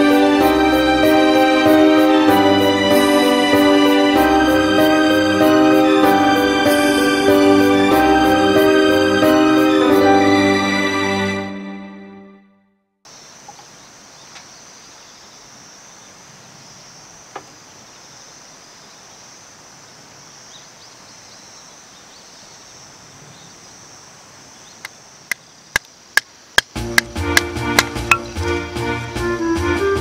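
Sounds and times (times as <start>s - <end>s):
insects chirring: 13.1s - 28.5s.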